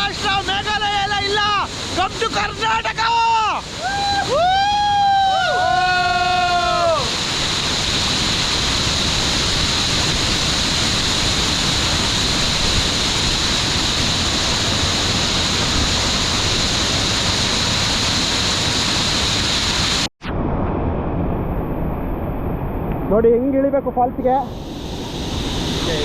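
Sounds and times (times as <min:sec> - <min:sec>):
waterfall rushing: 0:00.0 - 0:20.1.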